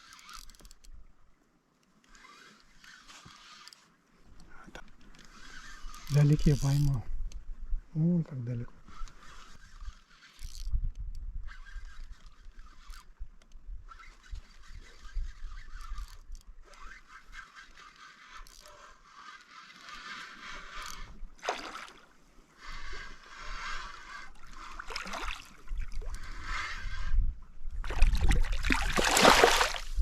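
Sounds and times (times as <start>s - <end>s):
spinning reel whirring: 0.0s - 0.9s, 2.0s - 3.9s, 5.1s - 7.0s, 8.9s - 10.8s, 11.4s - 21.4s, 22.5s - 27.4s
wind and handling rumble: 0.0s - 21.4s, 22.0s - 30.0s.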